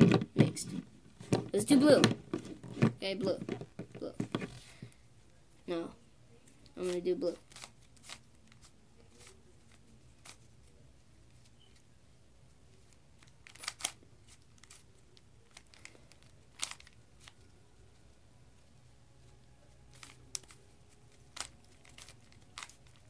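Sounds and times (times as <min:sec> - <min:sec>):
puzzle cube plastic clicks: 0:13.2 - 0:17.4, 0:19.9 - 0:23.0.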